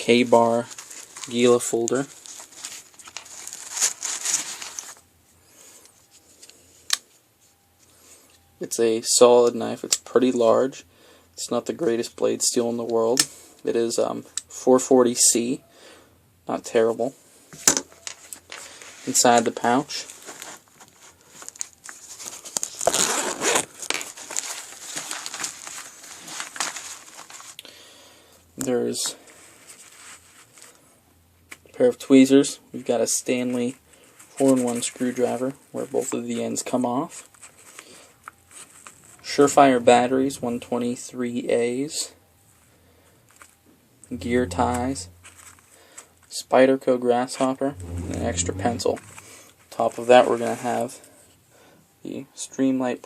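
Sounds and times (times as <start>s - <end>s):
rustling and scraping of pouch: 0.4s - 5.0s, 20.0s - 27.6s, 29.3s - 30.8s, 37.1s - 39.3s.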